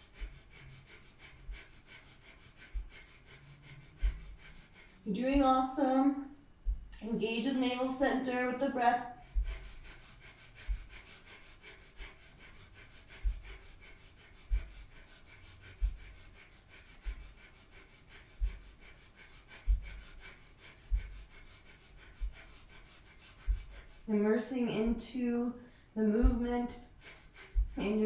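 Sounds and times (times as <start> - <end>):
rapid forceful nose breathing: 0.0 - 7.0, 7.7 - 24.1, 25.6 - 28.0
soft low thumps: 2.7 - 5.7, 6.4 - 7.4, 9.0 - 11.1, 13.2 - 14.9, 15.7 - 16.3, 17.0 - 17.4, 18.4 - 18.8, 19.6 - 20.2, 20.8 - 21.5, 22.1 - 22.6, 23.4 - 24.1, 26.1 - 26.9, 27.5 - 28.0.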